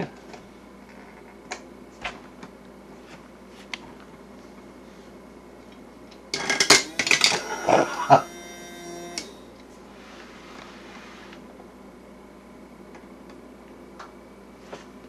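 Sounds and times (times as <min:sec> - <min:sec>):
steady high tones: 0:06.9 - 0:09.5.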